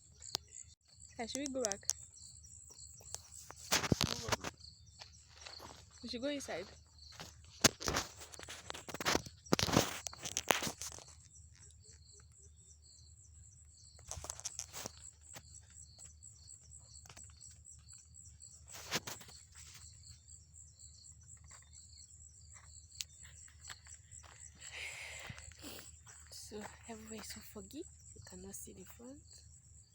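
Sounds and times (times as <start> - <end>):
knocks and rustles: 3.0 - 6.0, 7.1 - 11.1.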